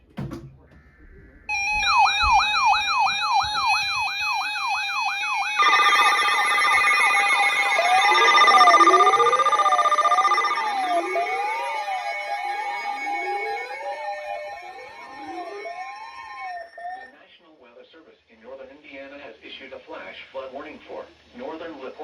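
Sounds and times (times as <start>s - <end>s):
electronic siren yelp: 1.5s - 17.1s
steady siren tone: 1.5s - 17.1s
wailing siren sweeps: 1.5s - 17.1s.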